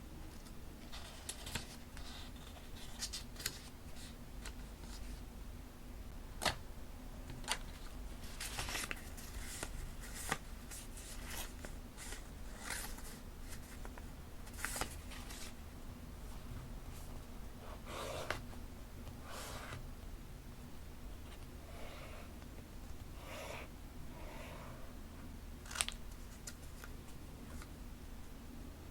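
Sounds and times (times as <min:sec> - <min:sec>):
paper rustling and crinkling: 0:00.4 - 0:05.2, 0:07.4 - 0:15.6.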